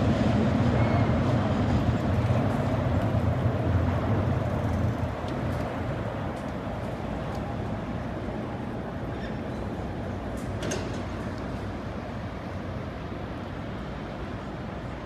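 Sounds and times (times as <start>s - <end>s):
rumble of passing vehicles: 1.3s - 14.6s.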